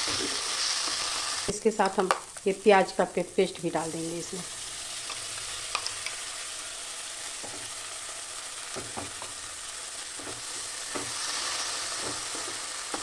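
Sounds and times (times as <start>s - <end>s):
paste sizzling in hot fat: 0.0s - 13.0s.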